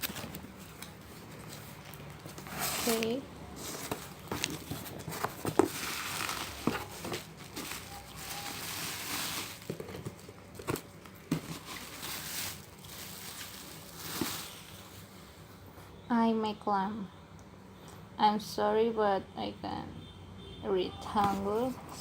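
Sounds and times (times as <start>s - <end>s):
packaging crinkling and rustling: 0.0s - 15.2s.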